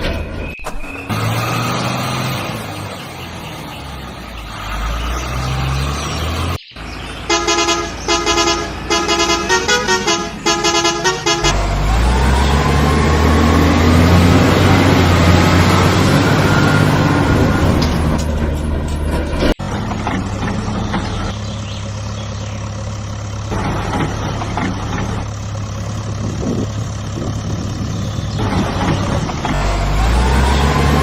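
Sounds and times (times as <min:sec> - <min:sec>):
heavy engine rising in pitch: 0:00.0 - 0:31.0
truck engine running: 0:00.0 - 0:31.0
horn toots: 0:07.2 - 0:12.0.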